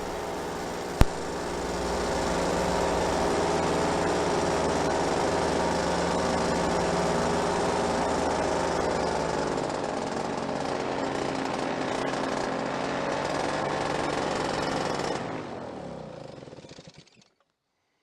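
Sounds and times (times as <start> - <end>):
paramotor engine running: 0.0 - 17.2
sharp click: 0.9 - 2.2.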